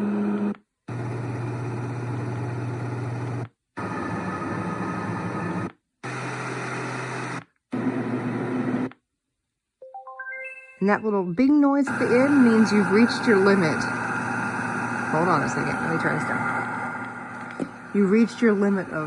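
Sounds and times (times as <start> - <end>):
low hum: 11.9 - 19.0.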